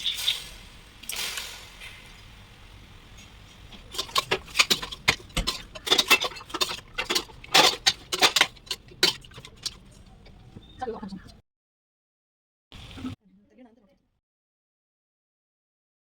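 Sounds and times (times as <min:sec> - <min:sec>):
kitchen utensils clicking: 0:03.2 - 0:10.6.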